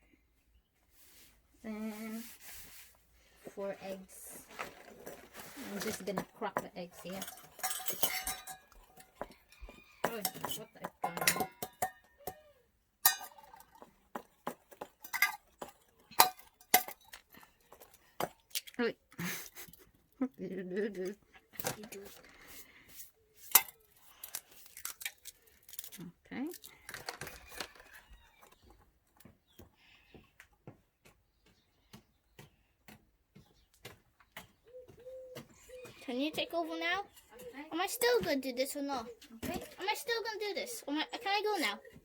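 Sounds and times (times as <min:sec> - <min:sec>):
utensil clinking against bowl: 0:05.0 - 0:18.7.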